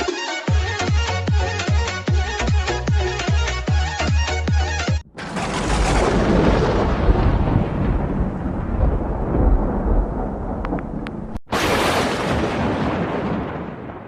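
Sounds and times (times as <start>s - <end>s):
thunder clap and rolling rumble: 5.0s - 14.0s.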